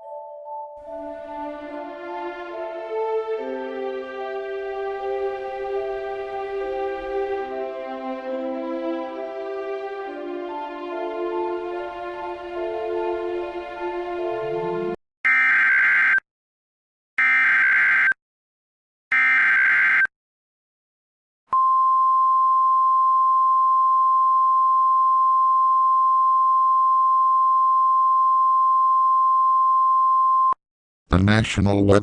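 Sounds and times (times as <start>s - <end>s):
music: 0.0s - 15.0s
steady single-pitch attention tone: 21.5s - 30.6s.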